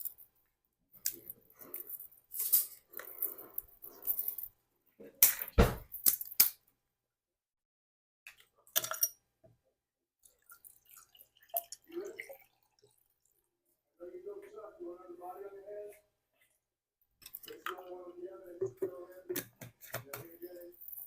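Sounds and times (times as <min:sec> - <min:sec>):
utensils on a plate: 0:01.0 - 0:04.5, 0:18.7 - 0:21.0.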